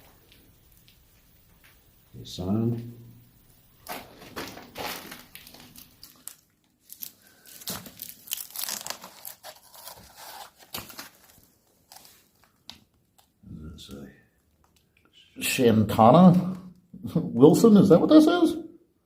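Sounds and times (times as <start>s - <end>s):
rustling and crinkling: 3.4s - 13.4s.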